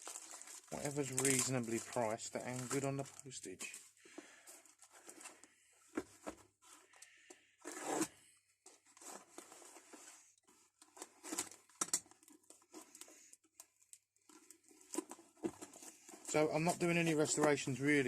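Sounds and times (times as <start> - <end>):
packaging tearing and rustling: 0.0 - 3.8, 10.8 - 16.4.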